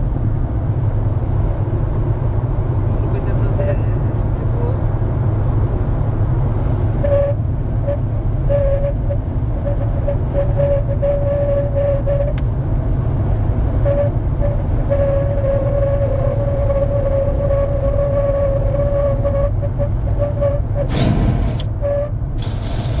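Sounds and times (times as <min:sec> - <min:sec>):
road and wind rumble: 0:00.0 - 0:23.0
thin wind whistle: 0:07.0 - 0:12.5, 0:13.8 - 0:23.0.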